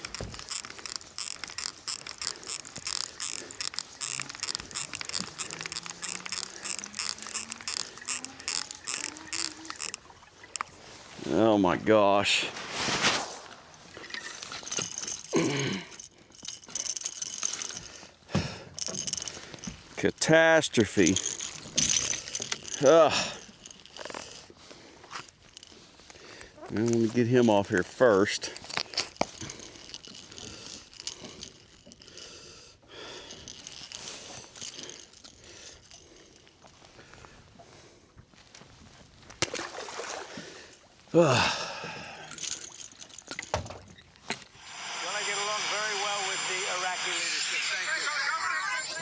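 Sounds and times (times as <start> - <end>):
small clicks: 0.0 - 10.8, 20.8 - 24.3
crinkling rustle: 0.0 - 32.3, 32.9 - 37.4, 42.1 - 44.6
fishing tackle rattling: 0.0 - 37.3, 39.2 - 44.6.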